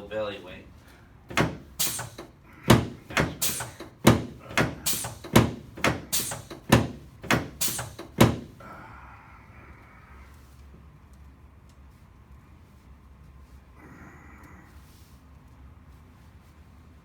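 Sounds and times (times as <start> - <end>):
table sections dropping with thunks: 1.3 - 8.6.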